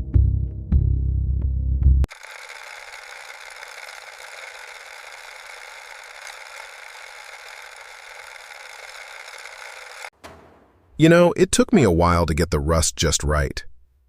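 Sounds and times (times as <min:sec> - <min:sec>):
small motor running: 0:02.1 - 0:10.1.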